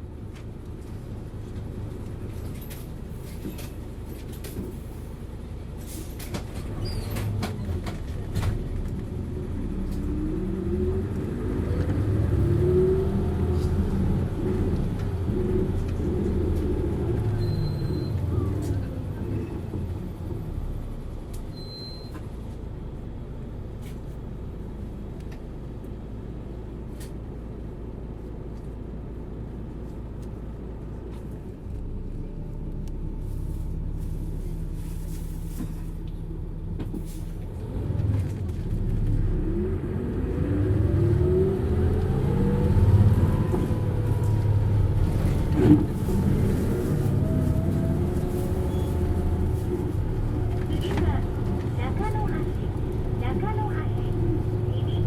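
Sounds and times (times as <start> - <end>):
bus engine rumbling: 0.0 - 55.0
engine whine: 31.7 - 55.0.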